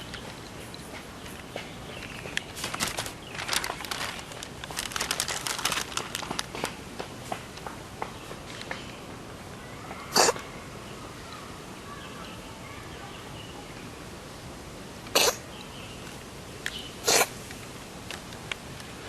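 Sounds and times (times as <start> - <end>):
cat sneezing: 10.1 - 10.4, 15.2 - 15.4, 17.0 - 17.3.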